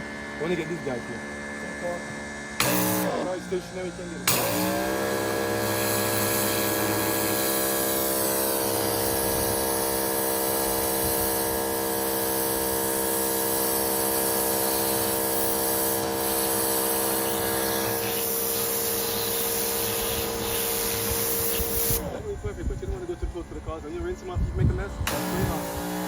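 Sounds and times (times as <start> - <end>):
pressure washer motor hum: 0.0 - 26.0
water jet hissing: 2.6 - 3.3, 4.3 - 22.2.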